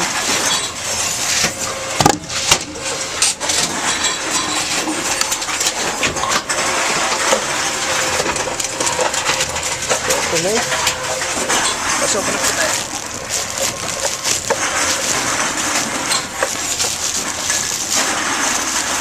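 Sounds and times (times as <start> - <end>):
cans and bottles crushing clatter: 0.0 - 19.0.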